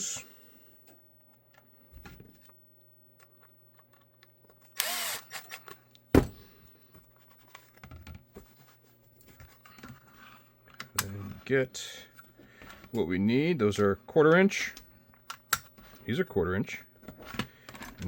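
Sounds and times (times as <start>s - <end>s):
power tool running: 4.8s - 5.6s.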